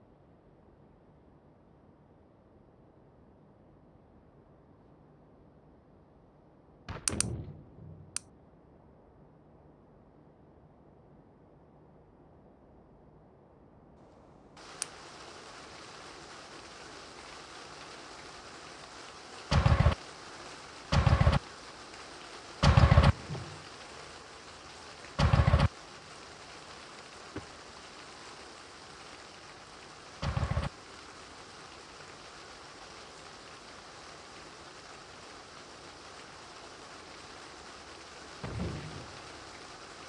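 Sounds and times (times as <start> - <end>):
loud low thumps: 6.9 - 8.2
heavy rain: 14.6 - 40.0.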